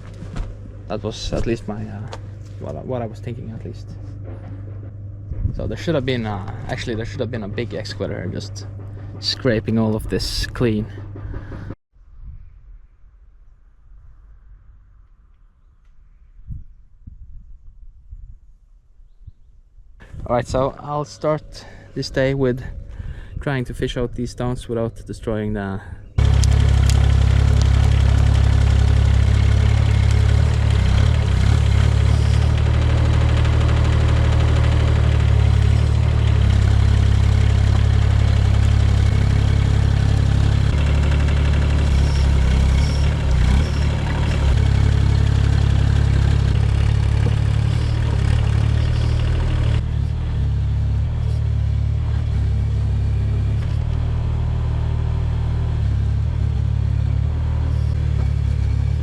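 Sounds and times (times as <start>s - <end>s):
excavator engine running: 0.0s - 11.8s, 26.2s - 59.0s
excavator digging stones: 26.2s - 49.8s.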